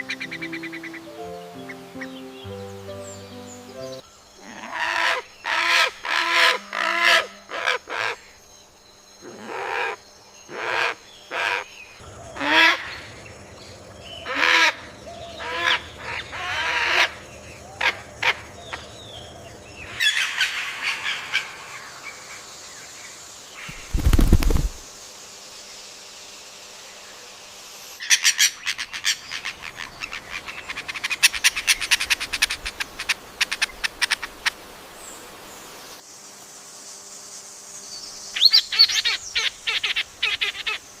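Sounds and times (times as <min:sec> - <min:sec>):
harsh bird calls: 0:09.2 - 0:22.3, 0:28.0 - 0:34.6
scratchy bird chatter: 0:23.7 - 0:24.8, 0:28.6 - 0:34.6.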